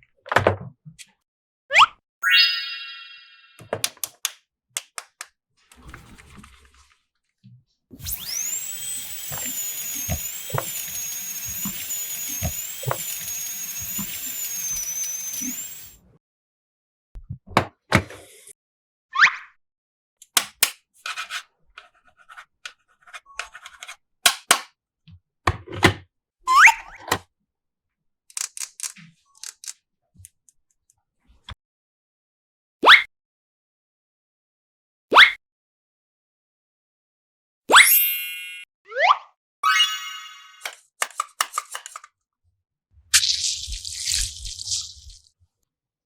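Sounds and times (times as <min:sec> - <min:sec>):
electronic toy wavering tones: 0:02.2 - 0:03.4, 0:08.0 - 0:16.0, 0:39.6 - 0:40.6
plastic toy pieces clicking: 0:28.3 - 0:29.8, 0:40.6 - 0:42.1.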